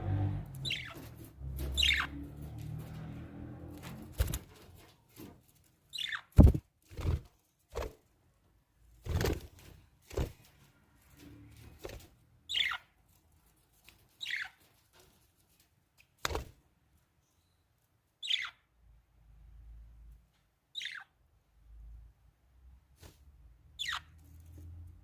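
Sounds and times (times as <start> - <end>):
budgerigars chirping: 0.6 - 1.0, 1.8 - 2.2, 6.0 - 6.4, 12.5 - 12.8, 14.2 - 14.6, 18.2 - 18.6, 20.8 - 21.1, 23.8 - 24.1.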